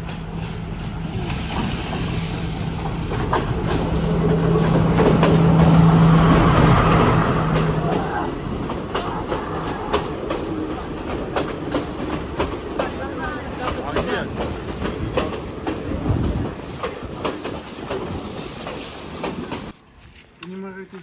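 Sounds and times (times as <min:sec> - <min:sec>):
train wheels clacking: 0:00.0 - 0:19.8
locomotive engine drone: 0:02.6 - 0:14.0.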